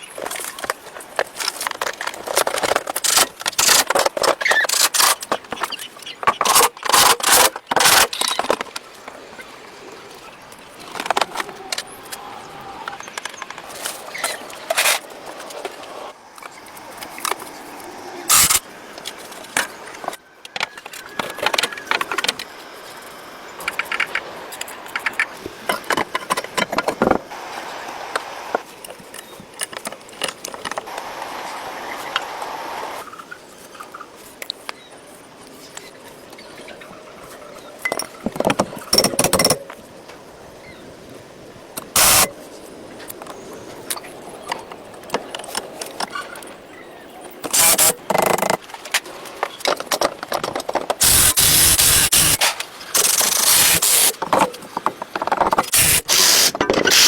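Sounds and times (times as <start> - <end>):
rubbing or scraping noise: 55.4 - 57.0.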